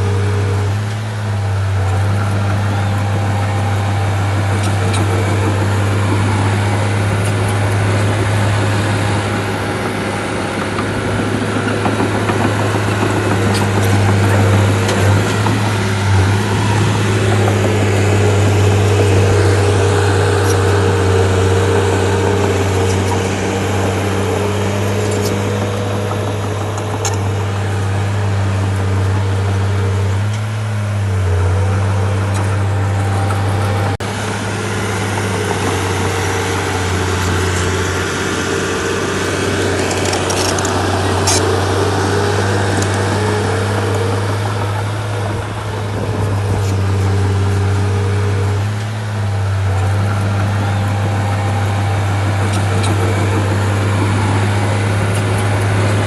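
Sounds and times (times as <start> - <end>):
bulldozer engine running under load: 0.0 - 56.0.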